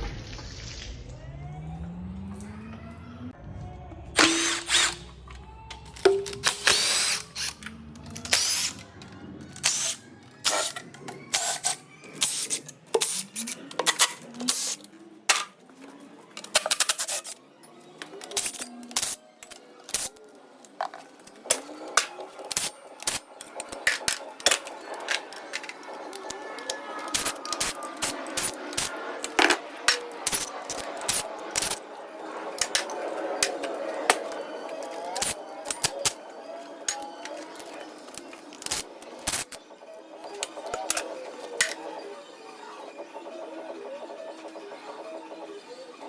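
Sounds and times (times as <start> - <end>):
power tool bursts: 4.2 - 5.0.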